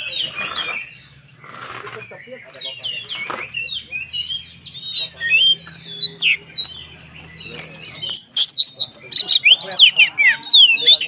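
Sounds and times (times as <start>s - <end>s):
songbird singing: 0.0s - 11.0s.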